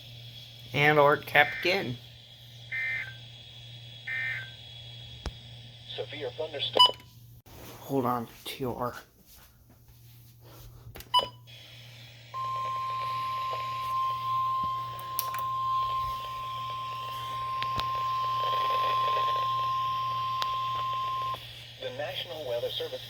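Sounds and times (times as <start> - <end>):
faint radio static: 0.0 - 7.0, 11.5 - 23.0
high steady alarm beep: 1.3 - 1.9, 4.1 - 4.6, 12.4 - 21.4.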